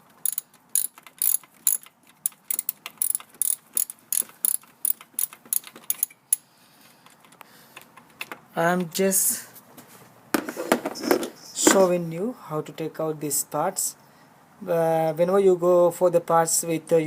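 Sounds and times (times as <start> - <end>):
ratchet wrench clicking: 0.2 - 6.4.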